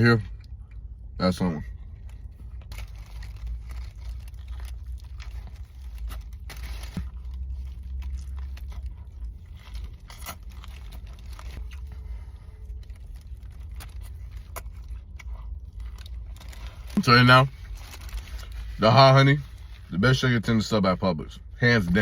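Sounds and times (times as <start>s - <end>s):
steady low rumble: 0.0s - 22.0s
wrapper crinkling: 2.0s - 19.9s
person biting and chewing: 2.2s - 16.6s.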